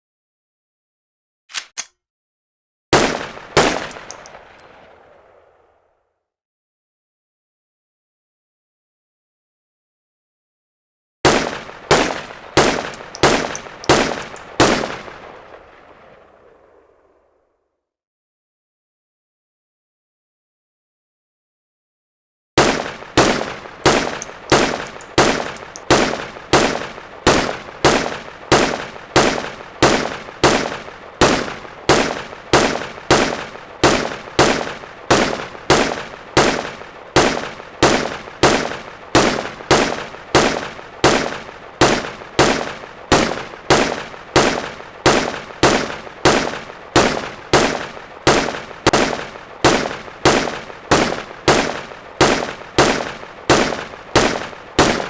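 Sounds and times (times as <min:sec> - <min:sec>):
rifle shots: 0:03.0 - 0:04.8, 0:11.3 - 0:15.3, 0:22.6 - 0:55.0.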